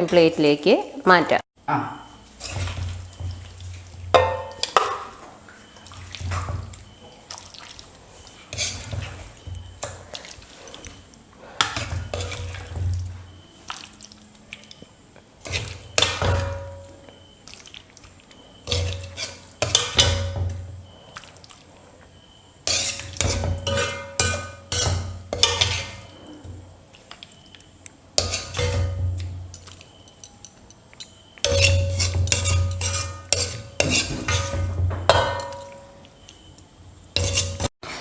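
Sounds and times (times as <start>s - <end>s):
spoon scraping a wok: 2.0s - 7.0s, 7.9s - 13.5s, 15.4s - 17.4s, 18.6s - 21.0s, 22.6s - 27.0s, 28.2s - 36.5s, 37.1s - 38.0s.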